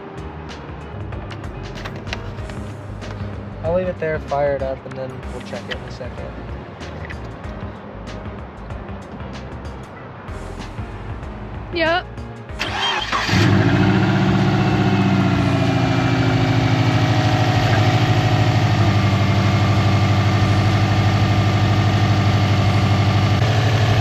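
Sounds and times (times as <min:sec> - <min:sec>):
car engine idling: 0:12.6 - 0:24.0.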